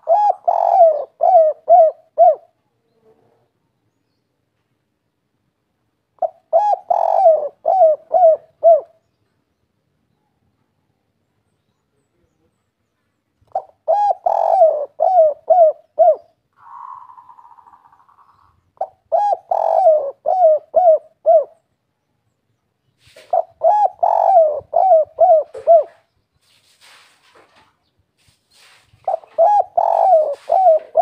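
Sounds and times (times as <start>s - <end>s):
dove cooing: 0.0s - 3.4s, 6.2s - 9.0s, 13.5s - 21.7s, 23.1s - 26.1s, 29.0s - 31.0s.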